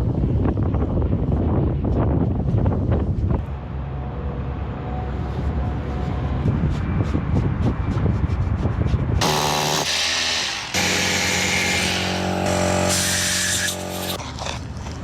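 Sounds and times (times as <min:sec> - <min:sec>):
wind rumble on microphone: 0:00.0 - 0:09.2
power tool motor whine: 0:09.2 - 0:14.2.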